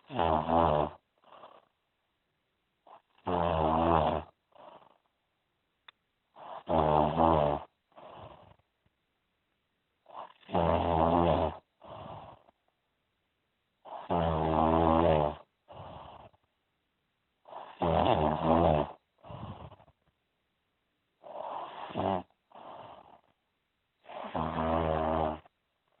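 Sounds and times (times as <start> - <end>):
person snoring: 0.0 - 1.7, 2.9 - 5.1, 6.4 - 8.6, 10.1 - 12.5, 13.8 - 16.4, 17.5 - 20.0, 21.2 - 23.4, 24.0 - 25.5.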